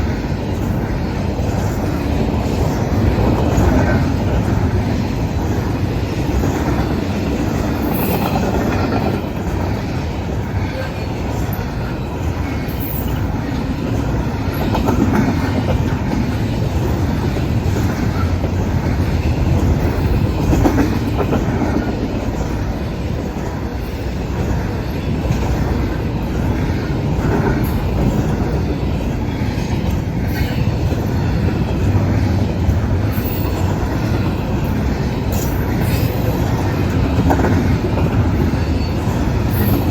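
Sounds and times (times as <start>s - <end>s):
freight train rumbling past: 0.0s - 39.9s
wheels clacking over rail joints: 0.0s - 39.9s.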